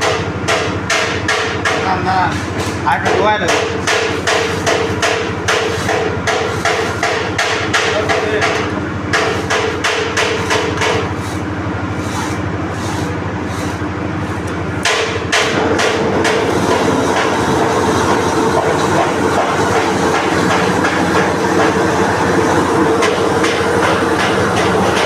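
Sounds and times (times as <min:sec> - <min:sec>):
hammer striking: 0:00.0 - 0:02.0, 0:03.0 - 0:11.1, 0:14.8 - 0:17.4, 0:23.0 - 0:25.0.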